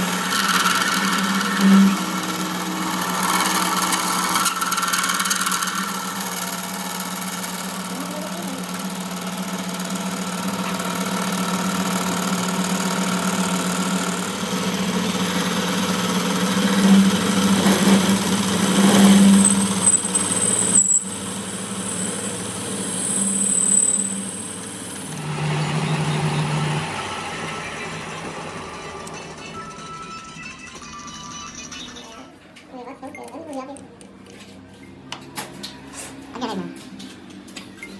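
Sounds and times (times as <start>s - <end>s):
workshop machine humming: 0.0s - 30.9s
faint high whine: 19.0s - 26.8s.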